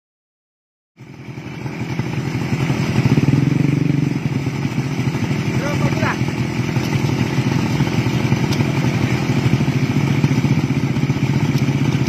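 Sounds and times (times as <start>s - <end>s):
aircraft engine running steadily: 5.2s - 12.0s.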